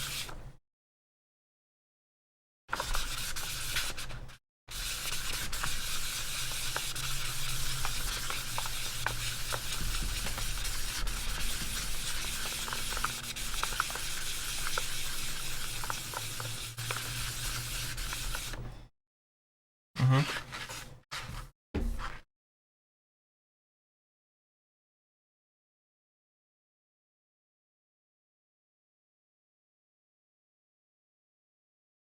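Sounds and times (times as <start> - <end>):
sandpaper scratching plastic: 2.7 - 18.6, 20.0 - 22.2.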